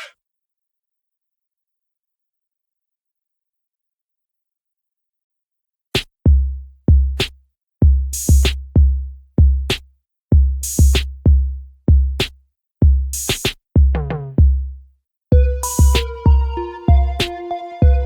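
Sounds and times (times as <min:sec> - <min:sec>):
deep booming kick drums: 0:06.3 - 0:09.8, 0:10.4 - 0:13.2, 0:13.8 - 0:14.7, 0:15.3 - 0:18.0.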